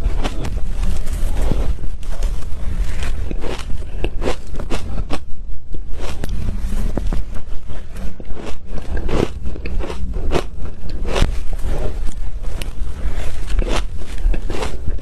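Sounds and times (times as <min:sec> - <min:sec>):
ice being bitten and chewed: 0:00.0 - 0:15.0.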